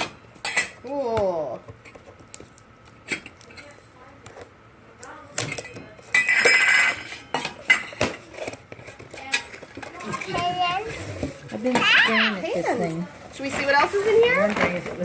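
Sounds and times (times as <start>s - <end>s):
toy pots and pans clattering: 5.5s - 12.3s.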